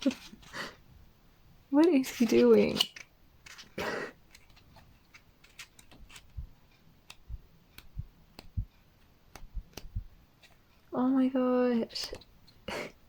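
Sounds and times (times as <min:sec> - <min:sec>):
paper pages flipping: 0:02.1 - 0:06.4.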